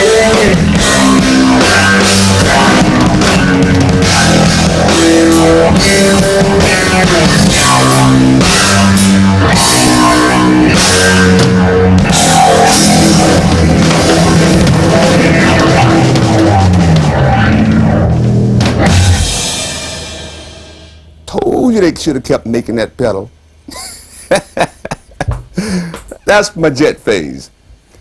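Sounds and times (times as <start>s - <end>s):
electric bass with phaser effect: 0.0s - 21.2s
rock drum beat: 0.0s - 21.2s.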